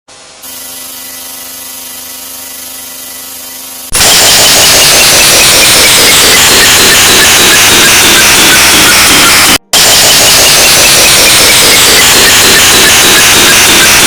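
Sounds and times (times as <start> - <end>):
loud distorted noise: 3.9 - 14.0.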